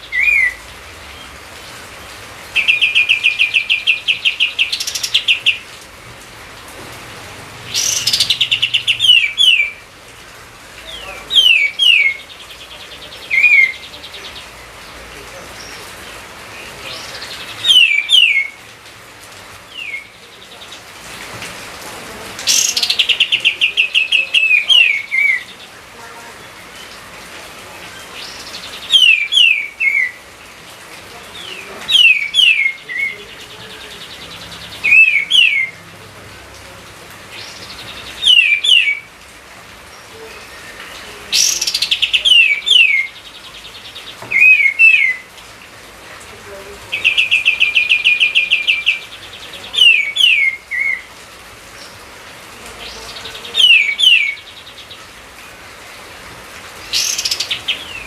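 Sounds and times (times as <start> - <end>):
songbird whistling phrase: 0.1 - 0.6.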